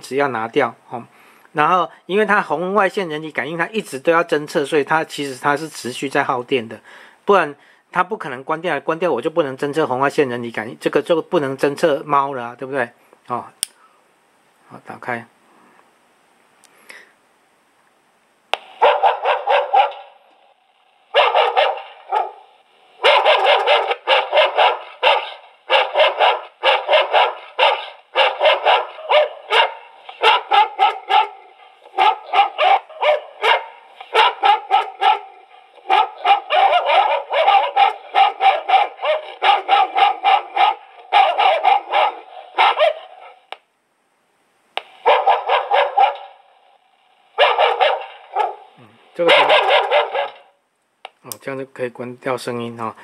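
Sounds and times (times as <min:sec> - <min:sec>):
recorded dog barking through speaker: 0:18.8 - 0:20.2, 0:21.1 - 0:43.5, 0:44.8 - 0:46.4, 0:47.4 - 0:50.6.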